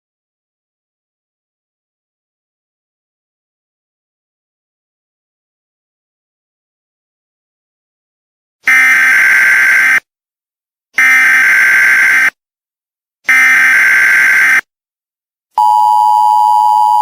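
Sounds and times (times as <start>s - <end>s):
two-tone attention signal: 15.6s - 17.0s.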